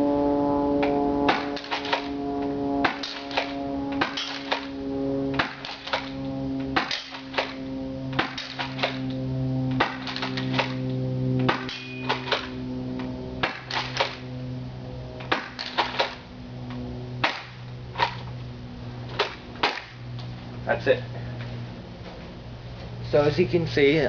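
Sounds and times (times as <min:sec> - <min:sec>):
airsoft shotgun racked and fired: 0:01.3 - 0:02.1, 0:02.9 - 0:04.7, 0:05.4 - 0:06.1, 0:06.8 - 0:07.6, 0:08.2 - 0:09.1, 0:09.8 - 0:10.8, 0:11.4 - 0:12.5, 0:13.4 - 0:14.2, 0:15.3 - 0:16.2.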